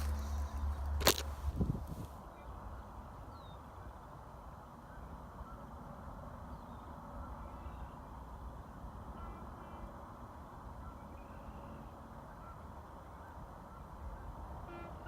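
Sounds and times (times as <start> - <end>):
steady low rumble: 0.0 - 2.7
faint bird chirps: 10.8 - 14.4.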